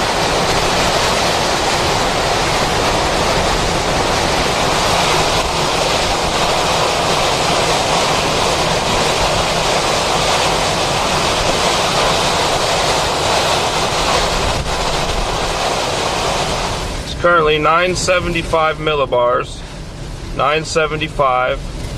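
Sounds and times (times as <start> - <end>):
wind buffeting microphone: 0.0 - 17.1
strong wind rushing: 0.0 - 18.4.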